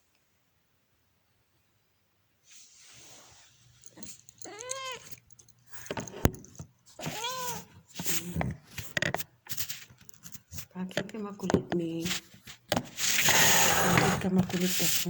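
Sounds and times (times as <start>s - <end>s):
cat meowing: 4.4s - 5.2s, 7.0s - 7.8s.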